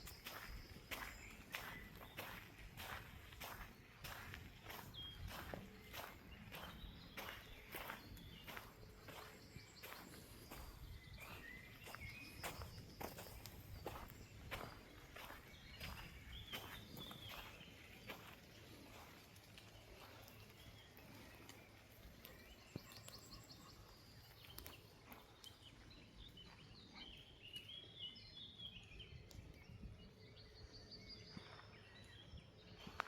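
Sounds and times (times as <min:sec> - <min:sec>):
small birds chirping: 0:00.0 - 0:33.0.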